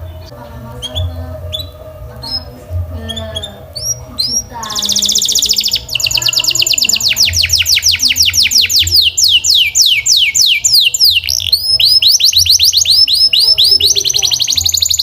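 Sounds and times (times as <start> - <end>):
canary singing: 0.0 - 15.0.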